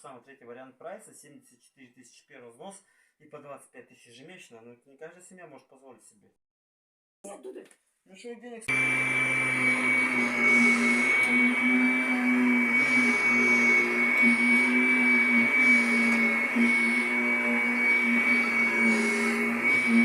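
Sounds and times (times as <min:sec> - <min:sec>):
vacuum cleaner motor running: 0:08.7 - 0:20.0.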